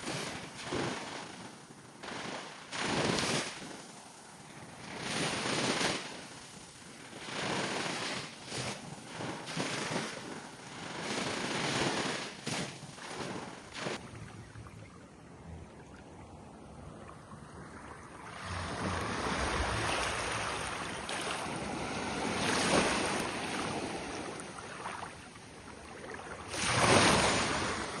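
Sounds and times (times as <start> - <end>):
waves washing onto beach: 0.0 - 28.0
wind on microphone: 13.3 - 28.0.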